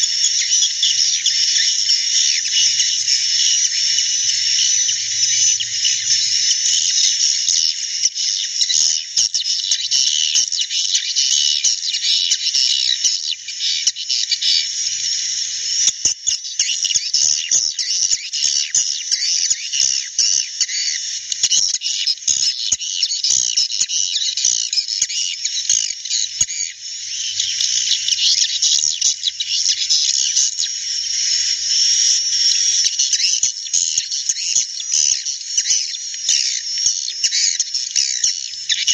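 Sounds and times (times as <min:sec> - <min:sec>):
swiftlets twittering: 0:00.0 - 0:09.4.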